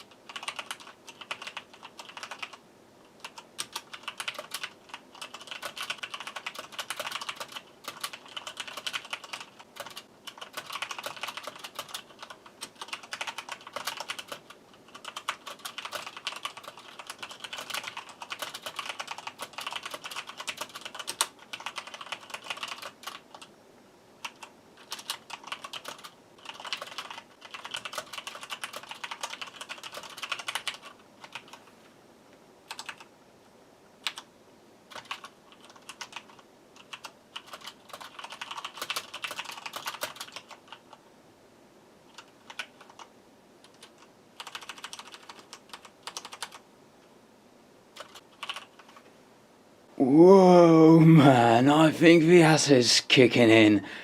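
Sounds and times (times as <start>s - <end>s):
mechanical keyboard typing: 0.0s - 2.6s, 3.2s - 23.5s, 24.2s - 31.6s, 32.7s - 33.1s, 34.0s - 34.3s, 34.9s - 41.0s, 42.1s - 46.6s, 48.0s - 49.0s.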